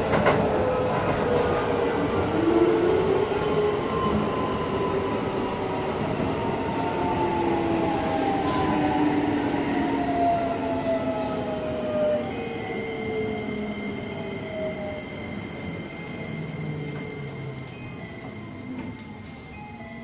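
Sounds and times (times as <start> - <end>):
electric train inverter whine: 0.0 - 20.0
train running and rail noise: 0.0 - 20.0.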